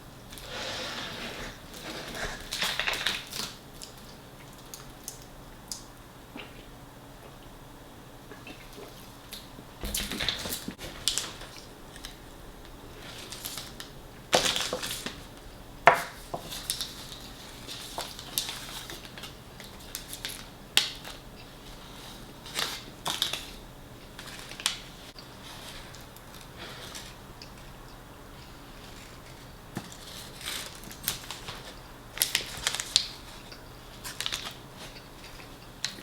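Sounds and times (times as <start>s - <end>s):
crunching fried chicken: 8.4s - 36.0s.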